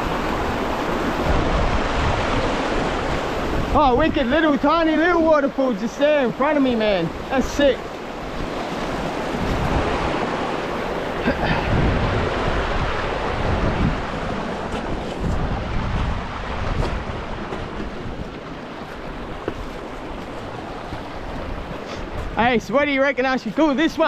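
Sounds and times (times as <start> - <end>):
wind buffeting microphone: 0.0 - 22.7.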